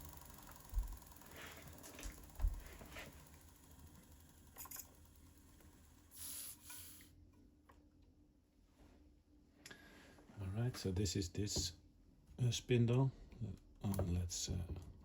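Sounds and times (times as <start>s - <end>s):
small metal parts clicking: 4.4s - 5.2s.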